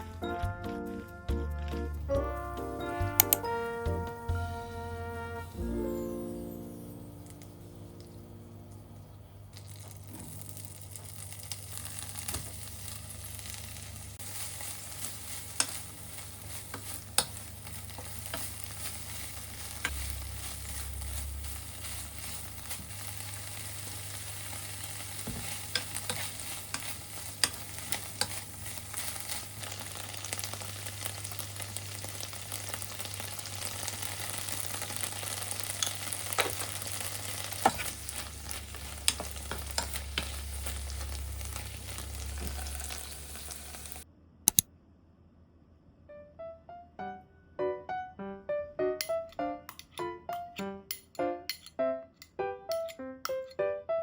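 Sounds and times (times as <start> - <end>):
vegetables sizzling in a pan: 9.6 - 44.0.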